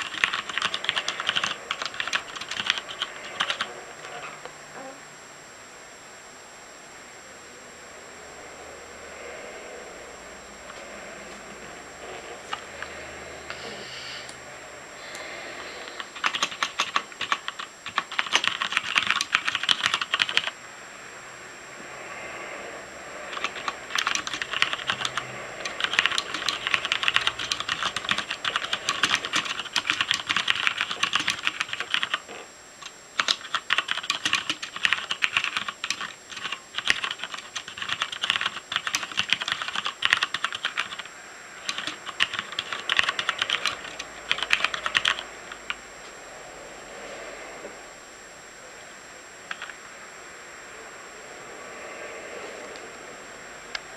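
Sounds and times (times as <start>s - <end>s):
mechanical keyboard typing: 0.0s - 4.4s, 16.0s - 20.5s, 23.3s - 32.2s, 33.2s - 45.8s, 49.5s - 49.8s.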